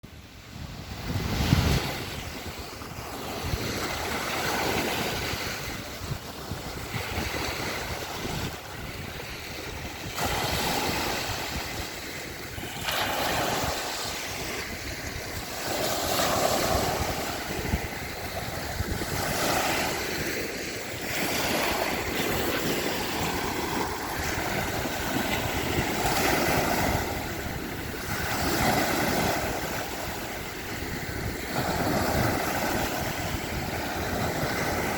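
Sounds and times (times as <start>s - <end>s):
surf washing onto shore: 0.1s - 34.9s
wind buffeting microphone: 0.1s - 34.9s.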